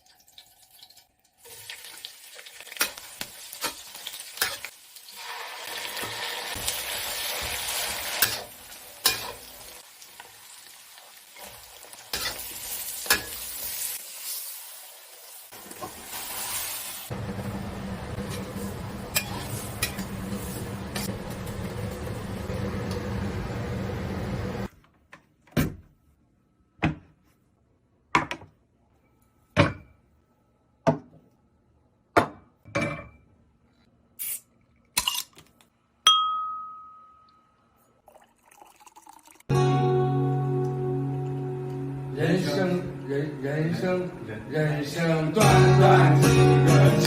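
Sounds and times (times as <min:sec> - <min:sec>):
tableware clinking: 0:36.1 - 0:37.4.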